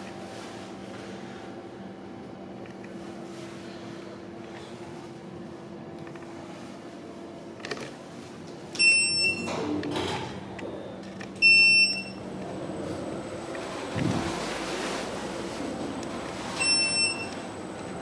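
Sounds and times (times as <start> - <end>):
lift beep: 8.8 - 9.6, 10.7 - 12.3, 16.5 - 17.5.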